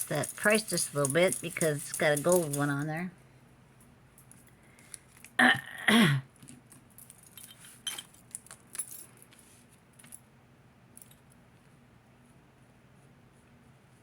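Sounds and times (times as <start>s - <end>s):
metal jewelry clinking: 0.0s - 3.1s, 6.6s - 10.2s.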